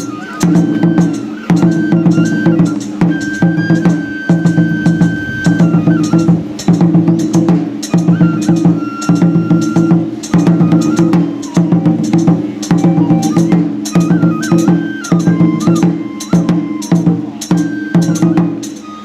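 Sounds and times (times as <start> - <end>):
flute melody: 0.0 - 19.0
sharp percussion strikes: 0.0 - 19.0
low pulsing drone: 4.3 - 7.9.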